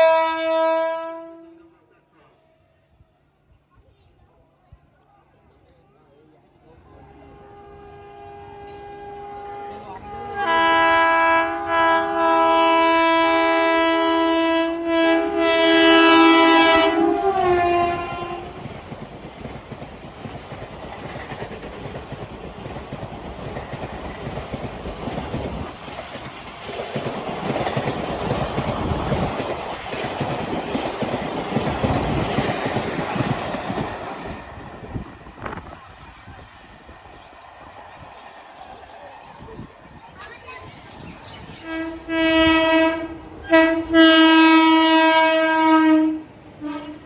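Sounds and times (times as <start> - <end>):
multi-tone train horn: 0.0 - 1.9, 7.0 - 18.8, 41.6 - 47.0
train wheels clattering on rails: 16.4 - 44.3.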